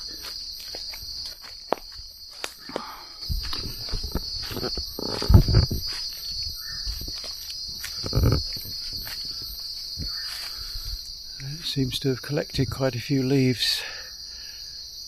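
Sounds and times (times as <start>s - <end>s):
feet scuffing: 0.0s - 11.0s
footsteps on forest floor: 0.0s - 11.9s
insects droning: 0.0s - 15.0s.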